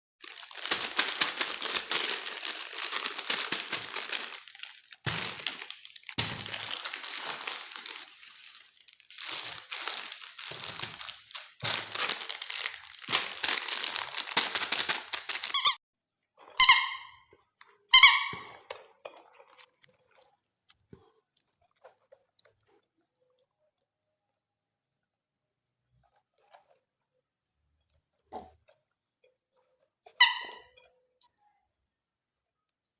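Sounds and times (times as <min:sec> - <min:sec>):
plastic packaging crinkling: 0:00.2 - 0:15.8.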